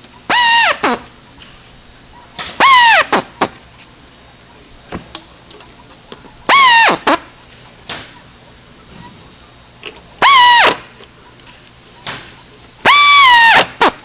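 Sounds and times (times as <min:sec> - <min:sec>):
cordless drill whining: 0:06.5 - 0:07.1, 0:10.2 - 0:10.8, 0:12.8 - 0:13.8.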